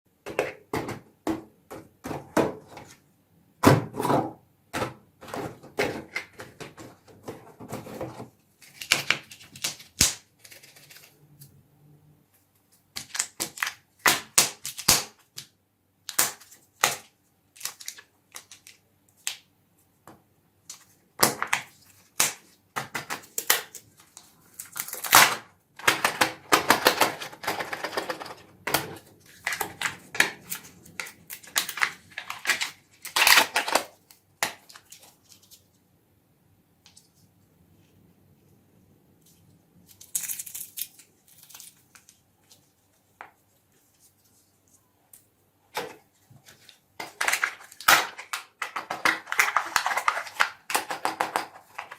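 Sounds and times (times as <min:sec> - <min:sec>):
wrapper crinkling: 0:39.9 - 0:42.9
plastic packaging clicks and taps: 0:47.0 - 0:51.9.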